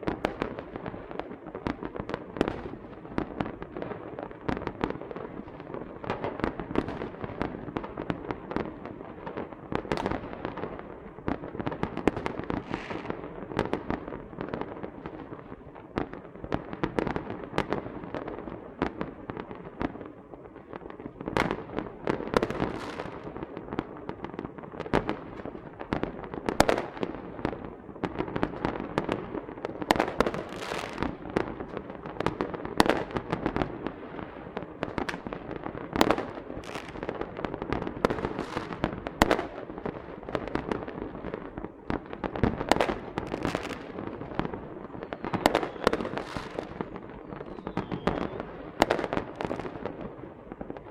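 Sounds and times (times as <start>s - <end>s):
firecrackers popping and banging: 0.0s - 50.9s.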